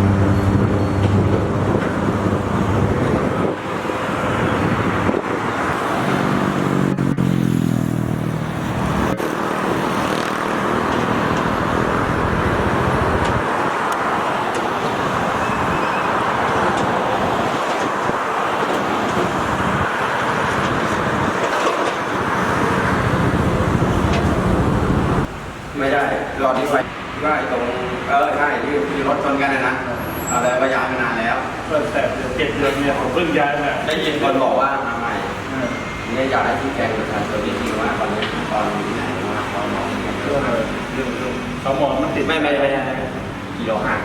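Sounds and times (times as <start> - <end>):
vehicle passing: 0.0 - 30.0
road traffic: 0.0 - 44.0.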